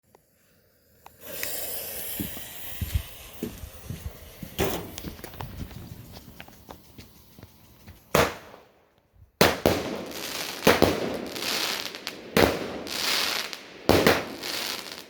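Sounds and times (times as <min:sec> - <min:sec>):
firework fuse hissing and sputtering: 0:00.1 - 0:08.5, 0:09.4 - 0:15.0
low thuds: 0:02.2 - 0:06.4
sharp crack: 0:08.1 - 0:08.7, 0:09.4 - 0:11.2.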